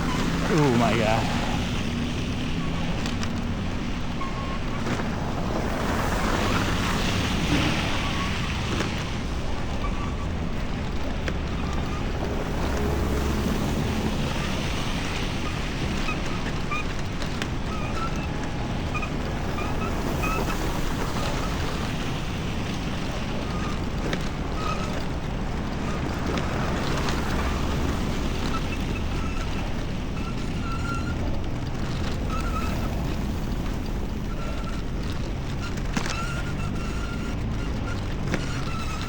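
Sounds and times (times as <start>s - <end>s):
low city street rumble: 0.0s - 39.0s.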